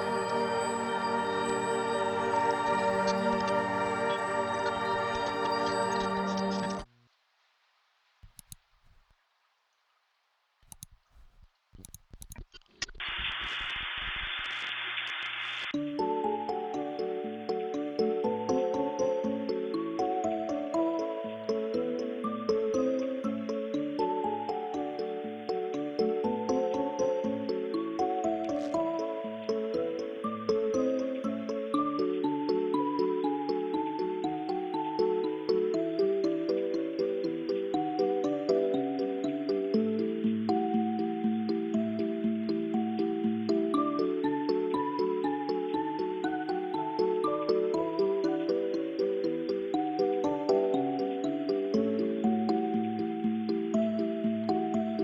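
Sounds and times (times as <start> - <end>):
layered sustained synth notes: 0.0 - 6.9, 15.8 - 55.0
music: 0.0 - 6.9, 15.7 - 55.0
light high ticks: 8.2 - 9.1, 10.6 - 12.4
small clicks and taps: 8.2 - 9.1, 10.6 - 12.6.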